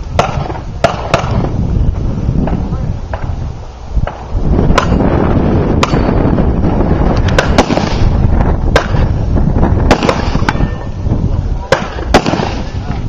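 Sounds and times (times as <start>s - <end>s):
gunshots: 0.2s - 1.6s, 5.8s - 6.2s, 7.3s - 9.1s, 9.9s - 10.7s, 11.7s - 13.0s.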